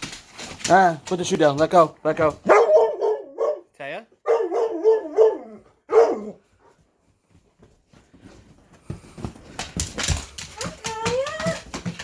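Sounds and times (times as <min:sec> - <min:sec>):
clattering clicks and scuffles: 0:00.0 - 0:02.6, 0:06.6 - 0:12.0
dog calling: 0:02.4 - 0:06.7.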